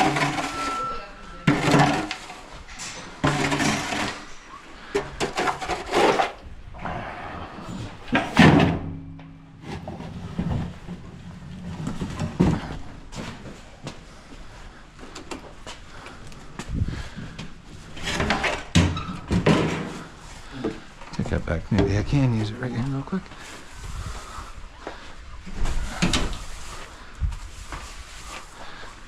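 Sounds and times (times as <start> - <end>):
broom sweeping floor: 25.7 - 28.9.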